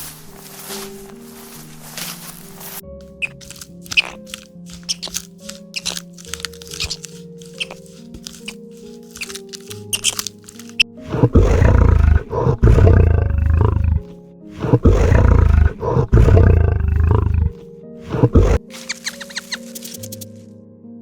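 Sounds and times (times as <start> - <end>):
background music: 0.0 - 21.0
large animal roaring: 11.0 - 18.6.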